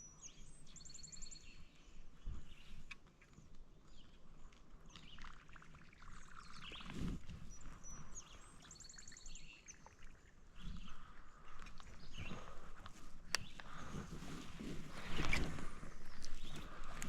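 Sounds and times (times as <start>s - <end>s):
songbird trill: 0.0s - 14.1s
rustling and handling noise: 11.6s - 17.0s.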